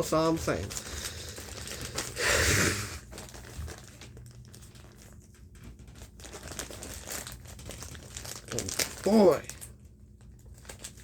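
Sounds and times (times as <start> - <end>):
package wrapping crinkling: 0.0 - 11.0.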